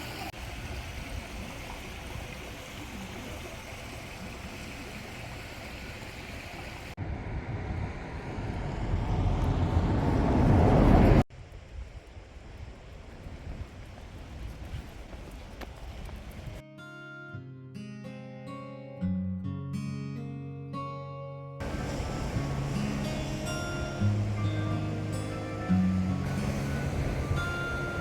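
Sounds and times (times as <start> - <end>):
sea surf rushing: 0.0 - 11.3, 21.6 - 28.0
wind on microphone: 7.0 - 16.6, 21.6 - 28.0.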